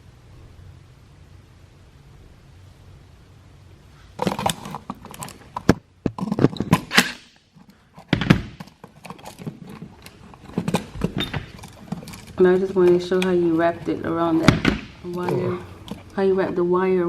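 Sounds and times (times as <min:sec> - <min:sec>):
clicks and knocks of tools: 0:04.2 - 0:14.0.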